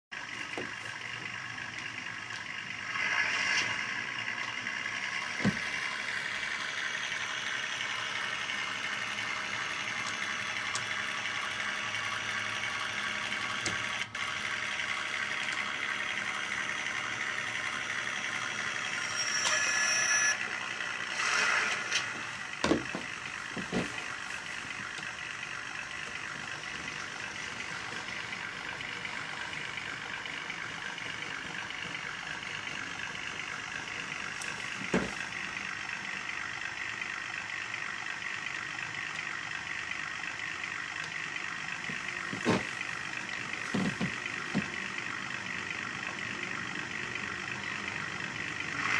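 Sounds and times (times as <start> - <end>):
idling engine sound from speaker: 0.2 - 48.9.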